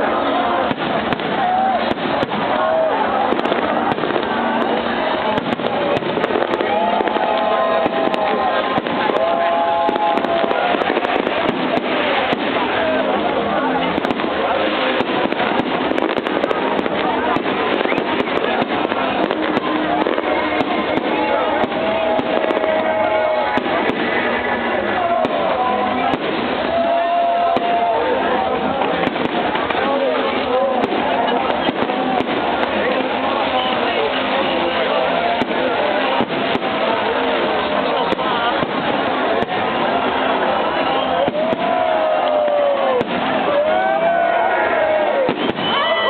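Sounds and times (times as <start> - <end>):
crowd noise: 0.0 - 46.0
fireworks bangs and crackles: 0.0 - 46.0.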